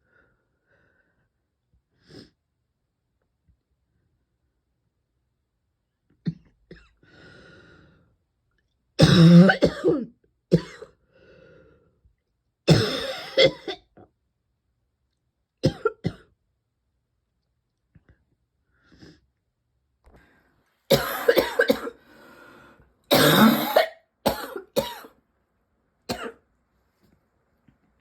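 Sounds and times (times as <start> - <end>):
quiet breaths: 0.0 - 2.4, 6.8 - 8.3, 11.0 - 12.2, 20.0 - 20.9, 21.9 - 23.1
person coughing: 9.0 - 10.9, 12.7 - 13.9, 15.6 - 16.3, 20.9 - 22.0, 23.1 - 25.1, 26.1 - 26.4.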